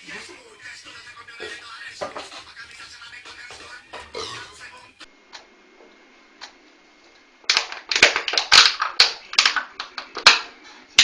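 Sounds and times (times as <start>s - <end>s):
loud sharp clicks and smacks: 7.5s - 10.6s.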